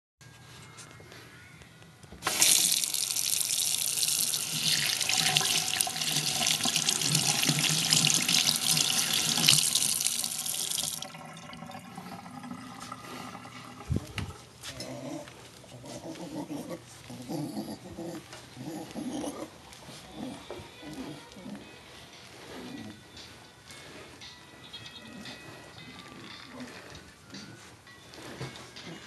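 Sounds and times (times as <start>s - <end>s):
tap water running: 2.2s - 14.6s.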